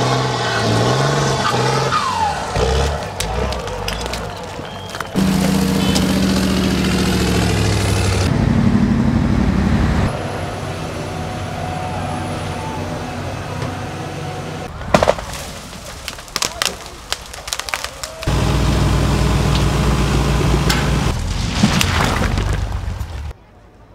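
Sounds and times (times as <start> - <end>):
diesel truck engines running: 0.0 - 14.8, 17.4 - 21.4.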